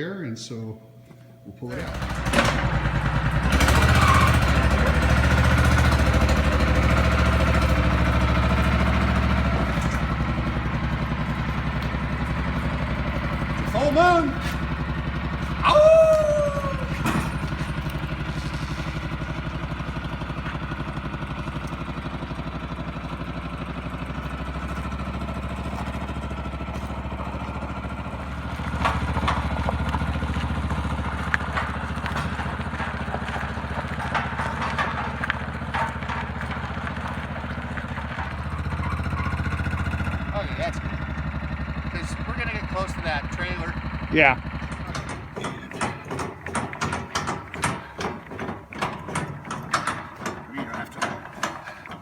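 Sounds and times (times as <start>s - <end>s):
small engine running: 1.6s - 52.0s
clicks and knocks: 28.6s - 40.1s, 44.6s - 52.0s.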